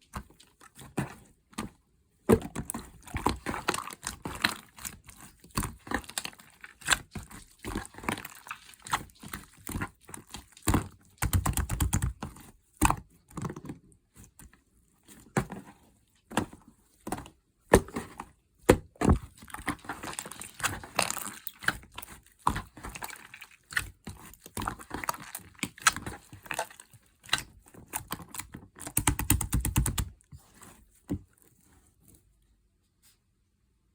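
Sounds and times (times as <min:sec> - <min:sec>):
slime squished by hand: 0:17.7 - 0:30.1.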